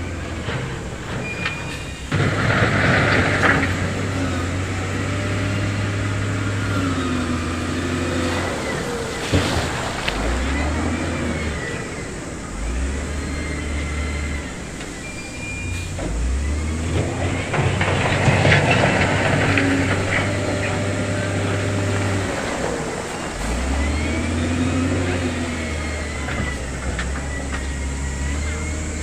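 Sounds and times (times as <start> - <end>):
heavy diesel machinery drone: 0.0 - 29.0
noisy rattling: 16.0 - 29.0.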